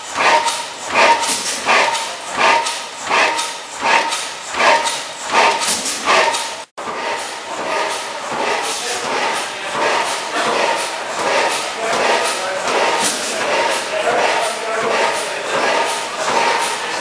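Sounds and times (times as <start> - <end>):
gas engine running: 0.0 - 17.0.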